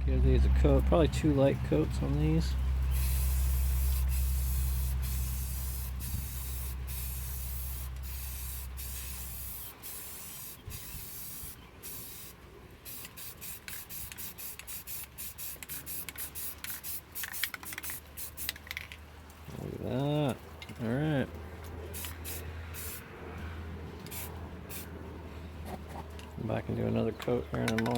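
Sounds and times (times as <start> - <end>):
spray paint can hissing: 2.9 - 18.8, 21.9 - 23.0, 24.0 - 24.9.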